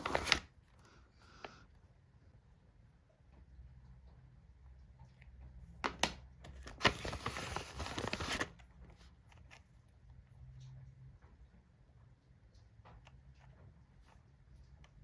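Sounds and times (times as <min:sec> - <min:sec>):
packaging crinkling: 0:00.0 - 0:00.5, 0:05.9 - 0:08.7.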